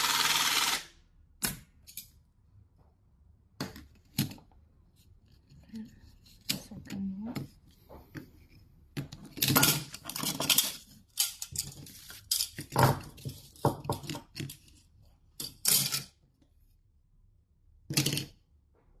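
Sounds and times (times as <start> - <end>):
metal pieces clanking and rattling: 9.4 - 13.2, 15.4 - 16.2.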